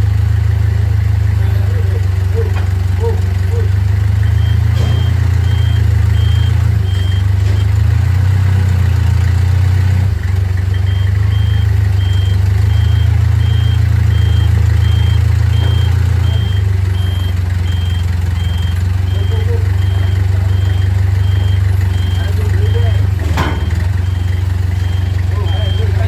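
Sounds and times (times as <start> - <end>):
vehicle engine idling: 0.0 - 26.0
electronic warning beeper: 3.4 - 8.0, 10.7 - 26.0.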